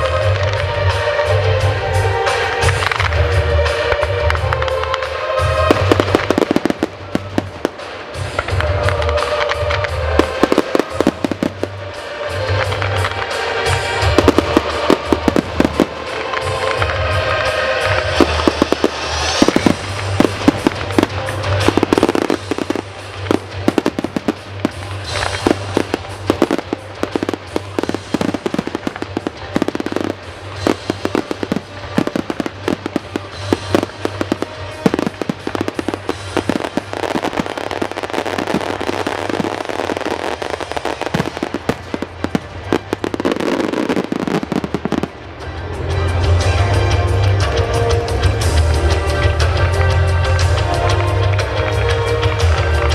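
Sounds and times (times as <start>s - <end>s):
fireworks bangs and crackles: 0.0s - 52.9s
music with steady bass: 0.0s - 52.9s.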